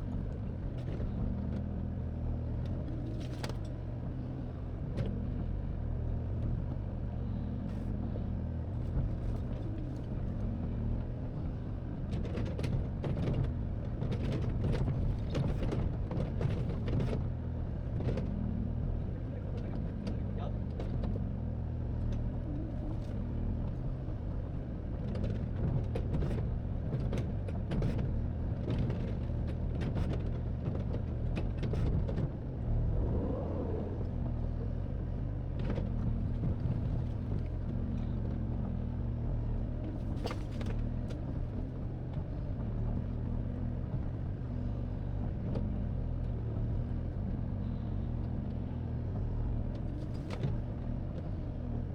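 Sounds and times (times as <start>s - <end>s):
diesel engine humming: 28.2s - 51.9s.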